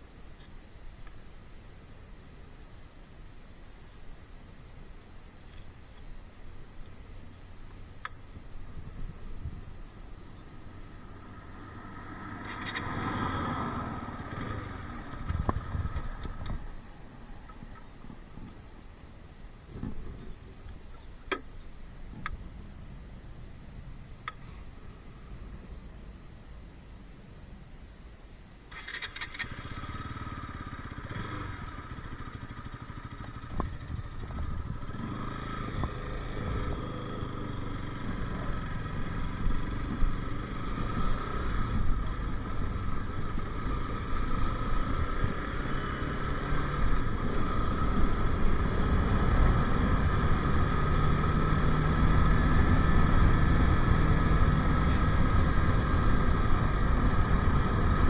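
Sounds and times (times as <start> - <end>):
motorcycle engine running: 8.7 - 16.8, 28.7 - 58.0.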